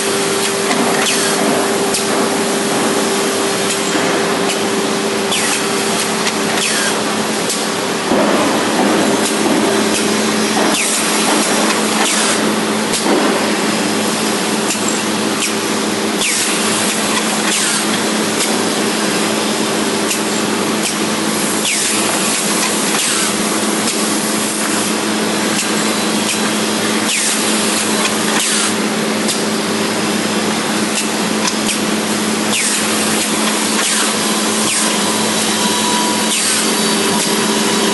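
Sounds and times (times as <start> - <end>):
drilling noise: 31.4 - 37.9.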